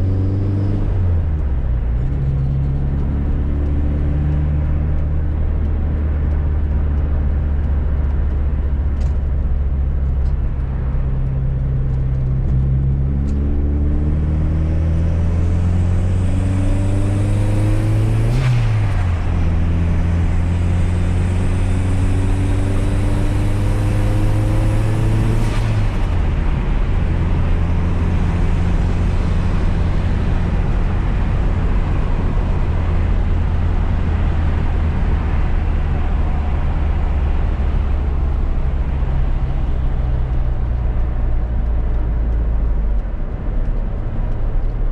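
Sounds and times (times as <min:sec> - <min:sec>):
car engine accelerating: 0:00.0 - 0:44.9.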